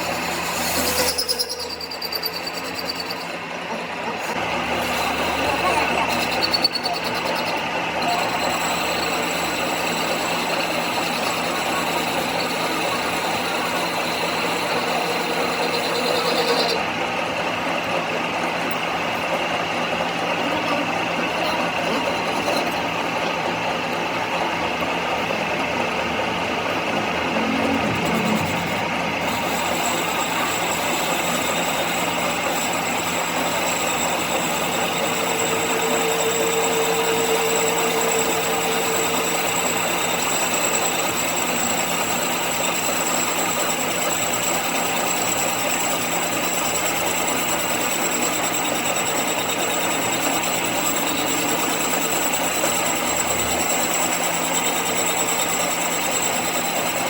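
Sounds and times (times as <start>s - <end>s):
machine tool running: 0.0s - 57.0s
high-pitched whine: 26.0s - 44.4s.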